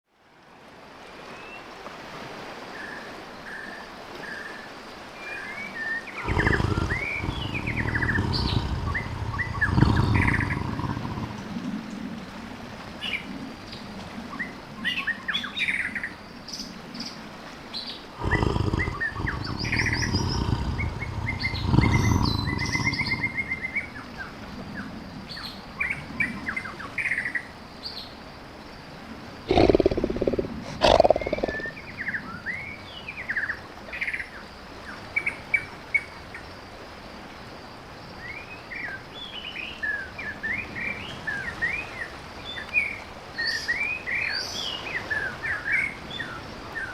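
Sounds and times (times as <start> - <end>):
birds chirping: 6.1 - 12.1, 18.2 - 27.4, 29.5 - 32.0
tiger growling: 6.2 - 12.0, 18.2 - 24.6, 29.5 - 31.8.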